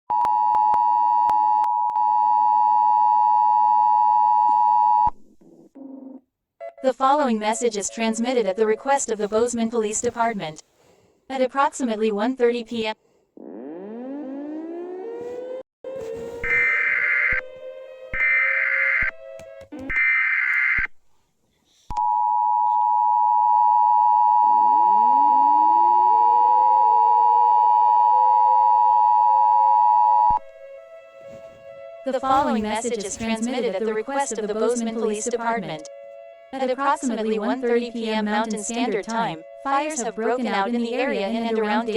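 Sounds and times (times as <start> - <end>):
siren winding up: 13.4 - 20.9, 22.7 - 31.1
two-tone attention signal: 24.3 - 27.2.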